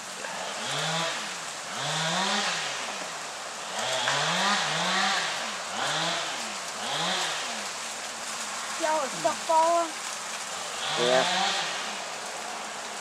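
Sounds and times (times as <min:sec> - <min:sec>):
chainsaw engine revving: 0:00.2 - 0:07.7, 0:10.5 - 0:12.6.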